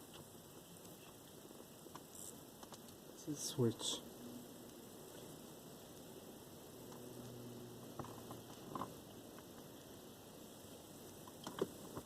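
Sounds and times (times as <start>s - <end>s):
low steady hum: 0.0s - 12.0s
clicks and rustles of small parts: 6.9s - 9.7s, 11.2s - 12.0s.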